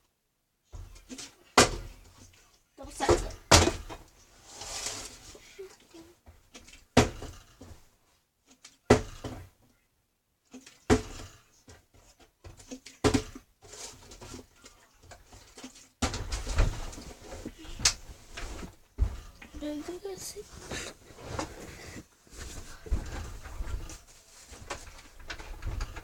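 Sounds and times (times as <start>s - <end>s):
plastic bottle thudding: 3.0s - 4.0s, 7.0s - 7.7s, 10.9s - 11.4s, 12.5s - 13.4s, 16.0s - 17.1s.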